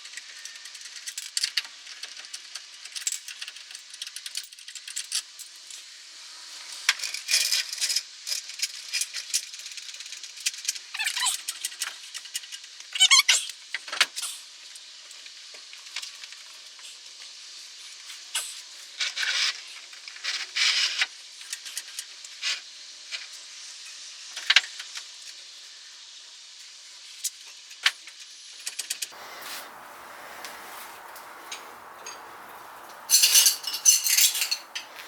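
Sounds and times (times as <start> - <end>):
short hissing bursts: 29.1 - 33.1
hand tools and metal parts clinking: 29.2 - 35.0.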